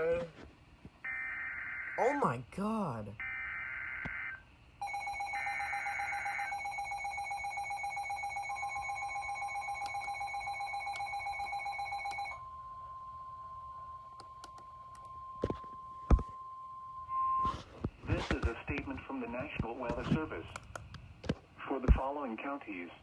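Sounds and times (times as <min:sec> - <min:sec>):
steady warning alarm tone: 0:01.1 - 0:02.3, 0:03.2 - 0:17.5
high data tones: 0:03.2 - 0:17.5.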